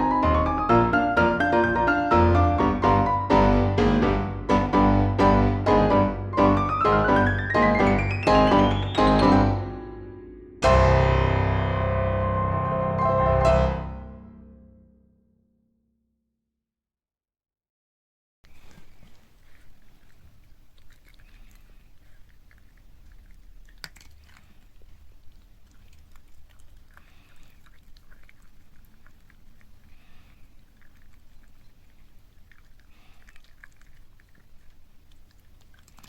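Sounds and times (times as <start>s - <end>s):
dog chewing food: 18.5s - 36.0s.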